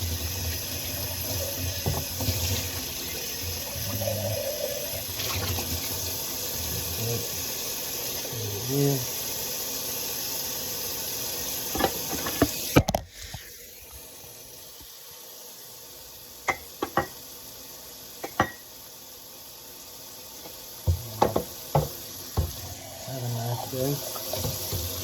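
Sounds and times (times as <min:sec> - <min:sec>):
tap running into sink: 0:01.2 - 0:03.2, 0:11.7 - 0:13.4, 0:20.4 - 0:22.7, 0:24.2 - 0:25.0
dishes and utensils clinking: 0:18.2 - 0:18.6
dishes knocking together: 0:20.9 - 0:22.6.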